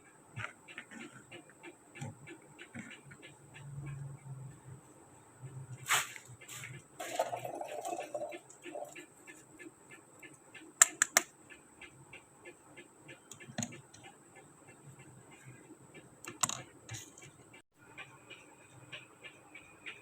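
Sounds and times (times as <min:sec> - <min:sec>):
sharp clicks: 0:10.8 - 0:11.3
plastic toy pieces clicking: 0:16.3 - 0:17.1.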